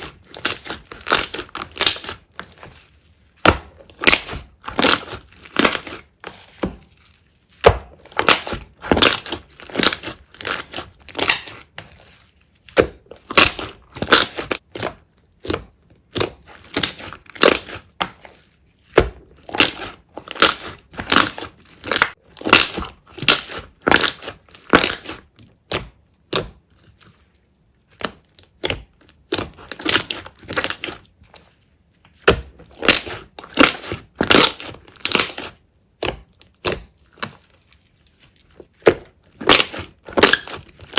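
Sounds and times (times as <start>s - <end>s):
slime crackling and popping: 0.0s - 2.6s, 7.0s - 11.8s, 13.0s - 18.0s, 19.4s - 27.0s, 28.0s - 31.0s, 32.1s - 40.9s.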